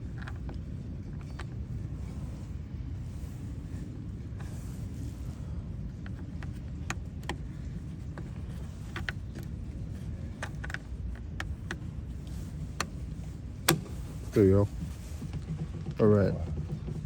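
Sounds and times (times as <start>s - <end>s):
steady low rumble: 0.0s - 17.0s
light clicks and taps: 5.9s - 15.6s.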